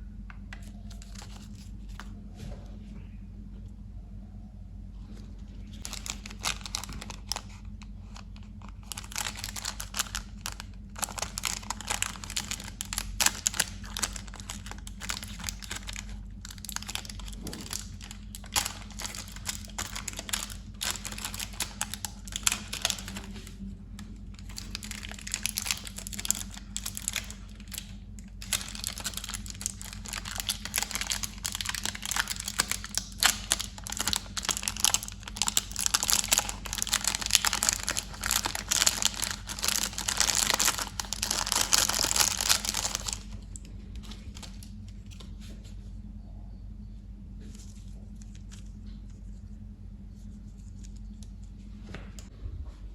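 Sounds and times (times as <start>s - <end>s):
steady low hum: 0.0s - 52.9s
candy wrappers crinkling: 0.4s - 2.1s, 5.5s - 45.6s.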